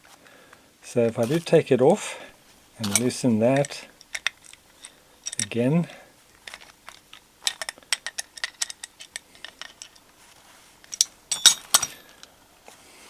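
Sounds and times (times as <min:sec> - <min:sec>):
small metal clicks and clinks: 0:02.8 - 0:05.6, 0:06.4 - 0:10.1, 0:10.8 - 0:12.3.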